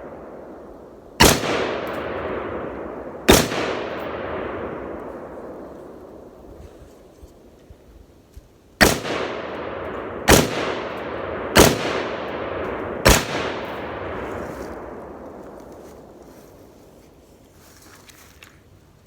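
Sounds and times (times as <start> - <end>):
gunshots with echo: 1.2 - 6.4, 8.8 - 15.3.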